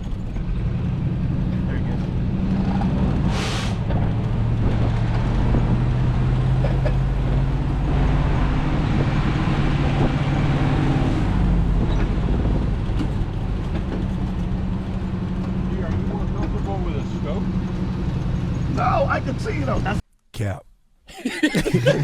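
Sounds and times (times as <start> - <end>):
buggy engine running: 0.0 - 20.0
burst of hiss: 3.3 - 3.8.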